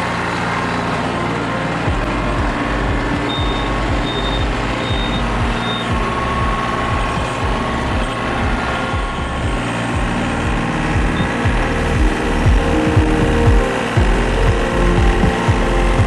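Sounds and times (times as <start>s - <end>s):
tractor diesel engine running: 0.0s - 16.0s
short high-pitched beeps: 3.3s - 6.7s.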